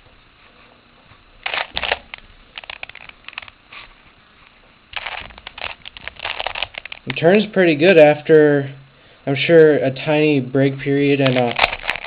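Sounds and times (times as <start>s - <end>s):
plastic puzzle cube clicking: 5.0s - 7.2s.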